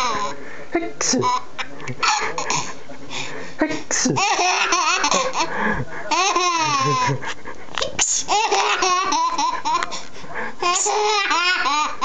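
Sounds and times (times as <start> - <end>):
baby laughing: 1.2 - 2.8, 4.1 - 5.5, 6.1 - 10.0, 10.6 - 12.0.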